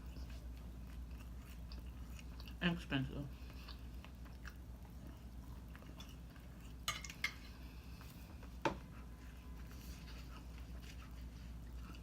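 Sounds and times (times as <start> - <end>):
utensil clinking against a dish: 6.8 - 7.6.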